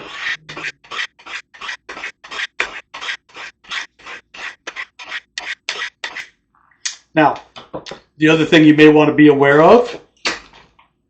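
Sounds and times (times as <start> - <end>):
knife scraping on ceramic sharpener: 0.0 - 6.4.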